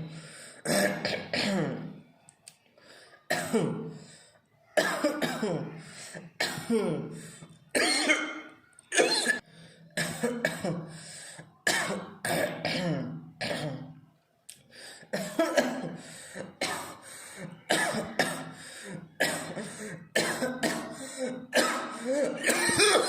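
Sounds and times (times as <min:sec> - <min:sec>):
person coughing: 0:00.6 - 0:01.9, 0:03.3 - 0:04.0, 0:04.8 - 0:09.4, 0:10.0 - 0:11.0, 0:11.7 - 0:14.0, 0:15.1 - 0:23.0.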